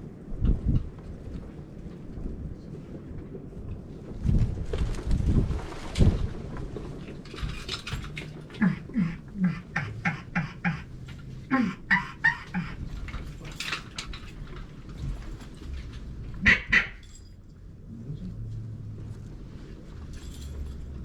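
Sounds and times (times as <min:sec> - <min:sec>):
wind rumble on microphone: 0:00.0 - 0:11.9
duck quacking: 0:08.6 - 0:12.9, 0:16.4 - 0:17.0.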